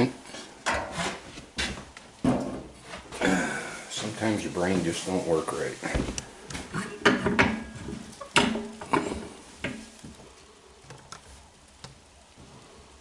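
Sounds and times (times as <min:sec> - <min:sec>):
hard objects clanking and knocking: 0:06.8 - 0:10.0.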